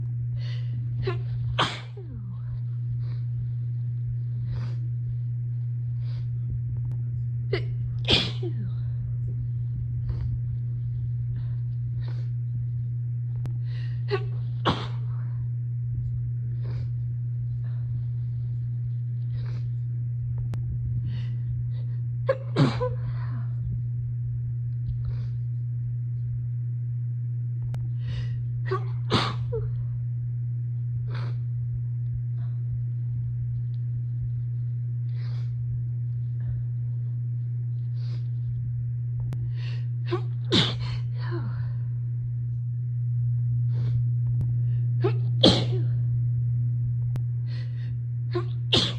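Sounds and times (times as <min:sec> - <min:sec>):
steady low hum: 0:00.0 - 0:48.9
quiet breaths: 0:00.3 - 0:07.0, 0:07.9 - 0:14.1, 0:15.0 - 0:22.2, 0:24.7 - 0:25.8, 0:30.9 - 0:38.7
person sneezing: 0:01.1 - 0:02.0, 0:07.6 - 0:08.6, 0:22.3 - 0:23.0, 0:28.7 - 0:29.6, 0:40.1 - 0:41.1, 0:45.0 - 0:45.9, 0:48.4 - 0:48.9.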